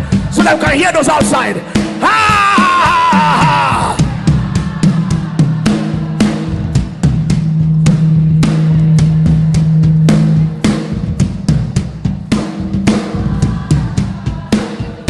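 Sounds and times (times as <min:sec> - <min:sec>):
drum kit beating: 0:00.0 - 0:15.0
deep bass notes: 0:03.3 - 0:14.4.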